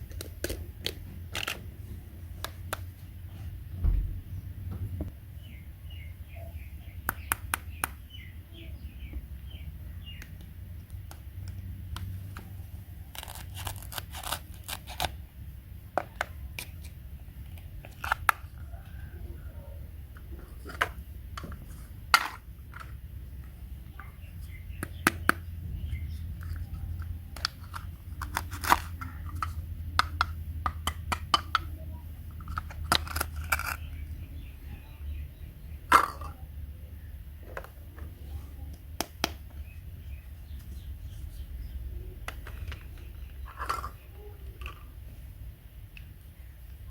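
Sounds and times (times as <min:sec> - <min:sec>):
steady low hum: 0:00.0 - 0:46.9
small objects clicking and tapping: 0:07.0 - 0:08.0, 0:20.2 - 0:34.1, 0:35.9 - 0:36.4, 0:42.2 - 0:44.9.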